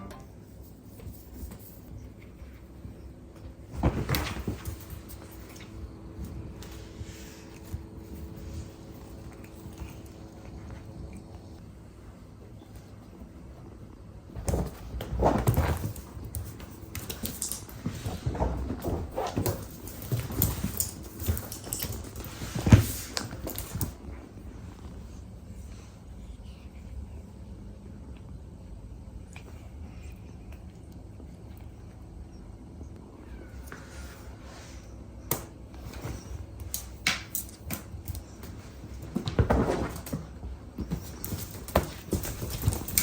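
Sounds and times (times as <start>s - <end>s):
cats scuffling: 0.0s - 28.4s, 29.1s - 43.0s.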